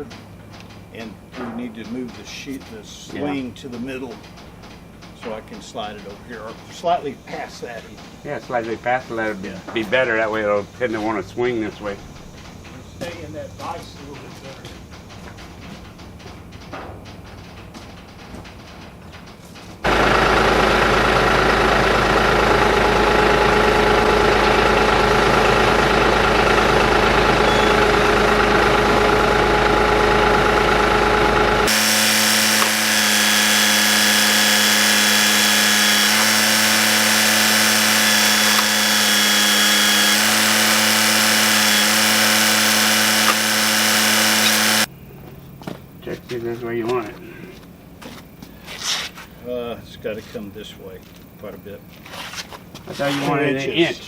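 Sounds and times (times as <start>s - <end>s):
loud machinery drone: 19.8s - 44.9s.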